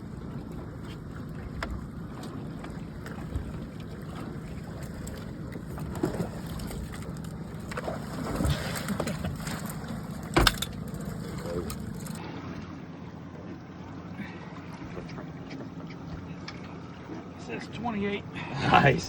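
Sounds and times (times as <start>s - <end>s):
boat rumbling on water: 0.0s - 19.0s
wind: 0.0s - 19.0s.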